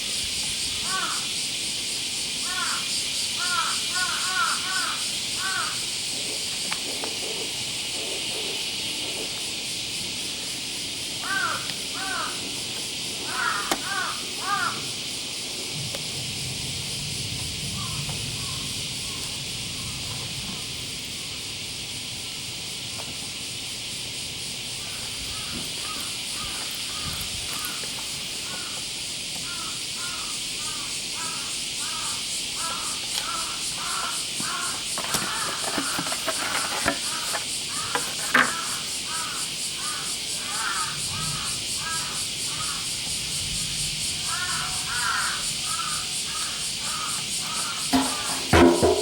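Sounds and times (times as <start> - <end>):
steady high hiss: 0.0 - 49.0
birds calling: 0.5 - 1.3, 2.3 - 7.6, 11.1 - 15.2, 24.8 - 43.3, 44.1 - 49.0.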